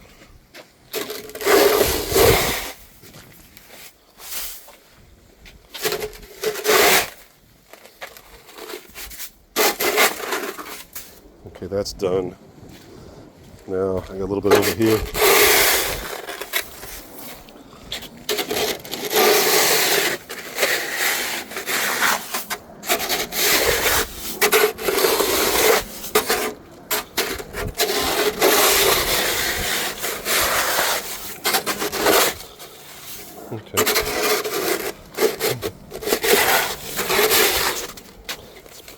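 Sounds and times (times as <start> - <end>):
snow shovel scraping pavement: 0.9 - 4.8, 5.7 - 11.2, 14.2 - 38.9.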